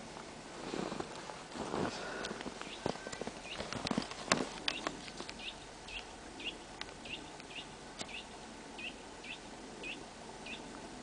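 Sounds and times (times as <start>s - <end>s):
small bird chirping: 2.6s - 3.8s, 4.6s - 10.7s.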